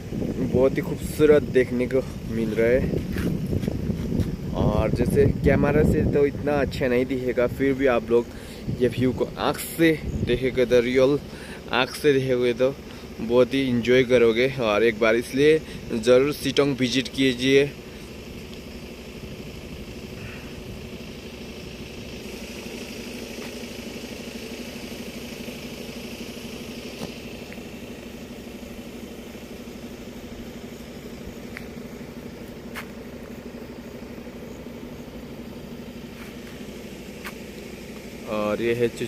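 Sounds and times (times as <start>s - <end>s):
truck engine humming: 0.0s - 39.0s
faint ticks: 18.4s - 18.7s, 31.4s - 31.8s.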